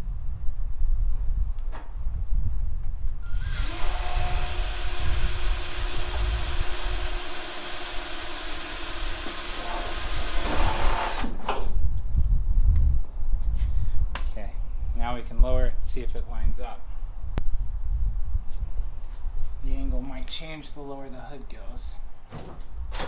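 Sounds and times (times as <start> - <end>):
electric drill drilling: 3.2 - 11.4.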